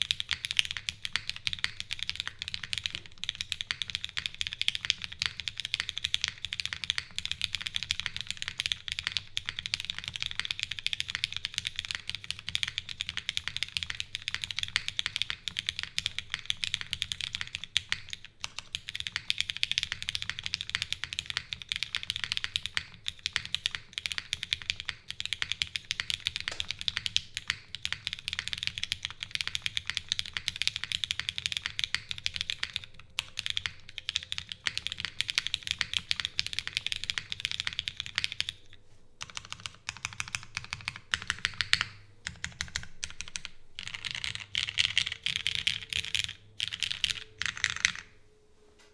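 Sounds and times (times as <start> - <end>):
mechanical keyboard typing: 0.0 - 48.2.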